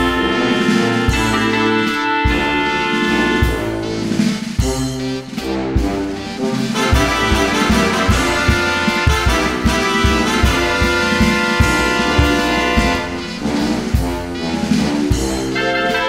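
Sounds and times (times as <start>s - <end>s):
drum beat: 0.0s - 15.6s
brass instruments music: 0.0s - 16.0s.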